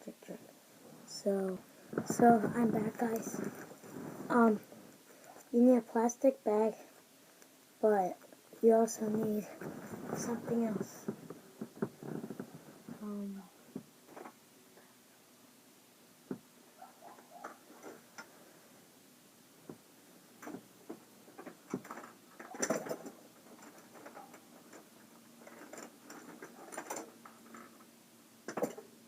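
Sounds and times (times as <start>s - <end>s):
small objects clicking and rustling: 20.4s - 27.9s.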